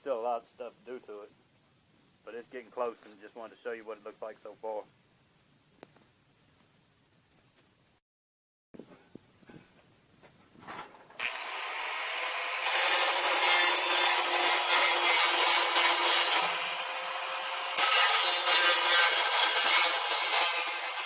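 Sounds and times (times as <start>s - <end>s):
power tool cutting: 11.2s - 21.0s.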